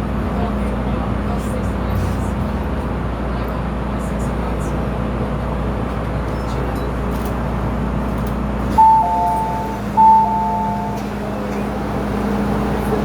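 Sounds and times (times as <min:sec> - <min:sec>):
train running noise and hum: 0:00.0 - 0:13.0
descending two-note electronic chime: 0:08.8 - 0:11.0.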